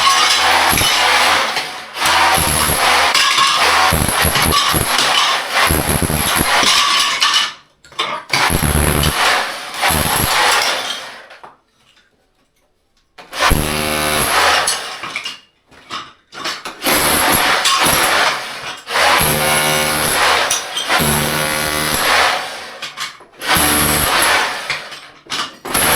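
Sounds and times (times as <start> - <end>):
power tool motor running: 0.1 - 6.8, 8.4 - 10.8, 13.4 - 14.7, 19.0 - 22.4, 23.5 - 24.7.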